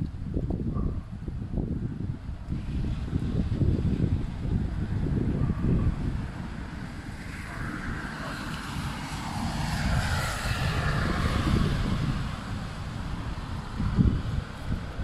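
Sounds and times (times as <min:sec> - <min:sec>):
wind buffeting microphone: 0:00.0 - 0:15.0
car tyres hissing on wet road: 0:02.6 - 0:04.1, 0:06.2 - 0:15.0.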